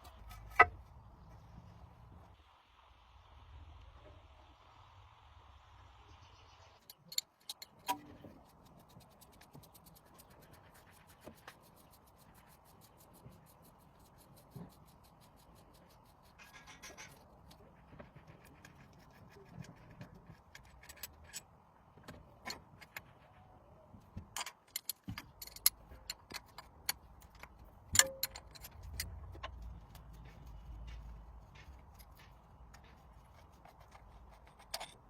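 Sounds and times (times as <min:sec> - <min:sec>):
hand tools clinking: 0:24.4 - 0:30.4, 0:33.8 - 0:35.0.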